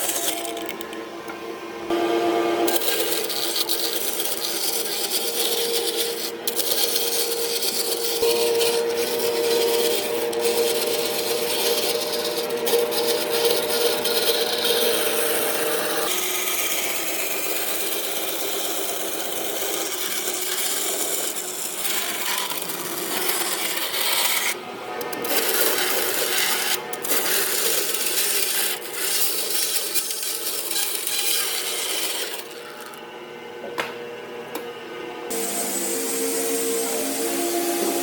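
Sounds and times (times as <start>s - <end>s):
tool scraping wood: 2.7s - 16.2s, 19.5s - 33.0s.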